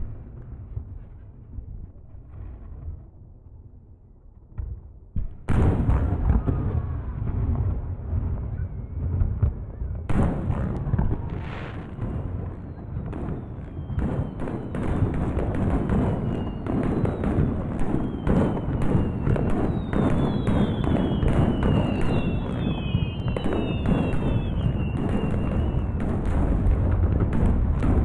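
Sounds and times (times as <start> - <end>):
fireworks booming and crackling: 0.0 - 3.5, 4.4 - 28.0
falling firework whistles: 10.1 - 26.7.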